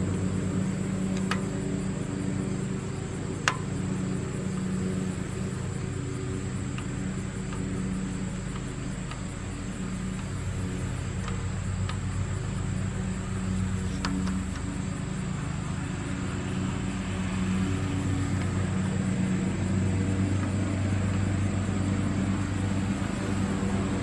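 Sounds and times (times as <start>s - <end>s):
motor humming: 0.0s - 24.0s
sharp clicks and taps: 3.4s - 3.7s.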